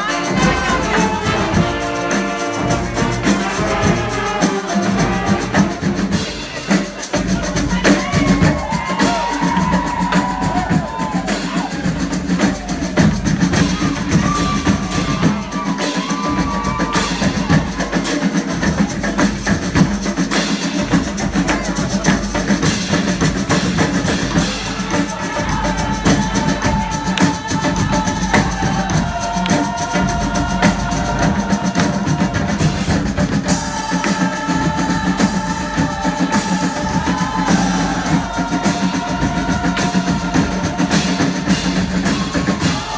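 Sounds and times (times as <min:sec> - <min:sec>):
horns playing held notes: 0:00.0 - 0:06.5
drums keeping a steady beat: 0:00.0 - 0:42.9.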